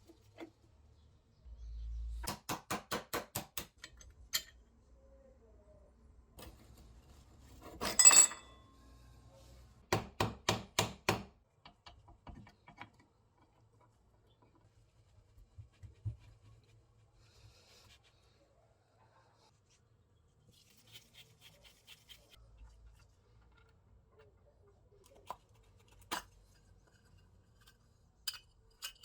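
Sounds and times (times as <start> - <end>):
metal tools clinking: 7.8 - 8.6.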